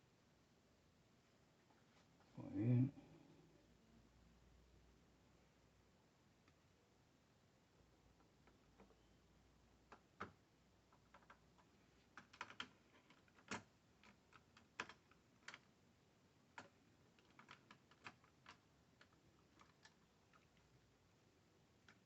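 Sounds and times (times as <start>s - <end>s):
small hard parts clicking: 16.5s - 20.7s.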